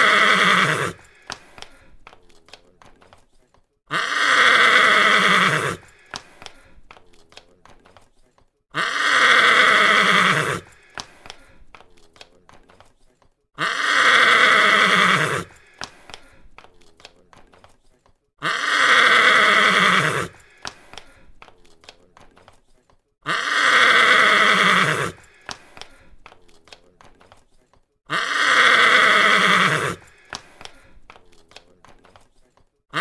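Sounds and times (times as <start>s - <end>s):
horse whinnying: 0.0s - 1.2s, 3.9s - 6.0s, 8.8s - 10.8s, 13.6s - 15.7s, 18.4s - 20.5s, 23.2s - 25.4s, 28.1s - 30.2s.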